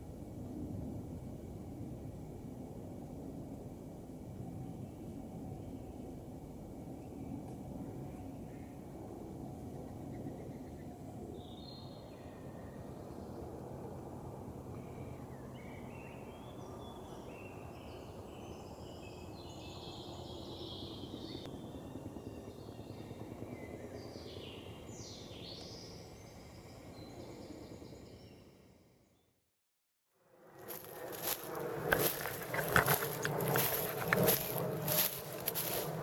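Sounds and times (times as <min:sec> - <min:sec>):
songbirds chirping: 0:30.6 - 0:36.0
steady low rumble: 0:30.6 - 0:36.0.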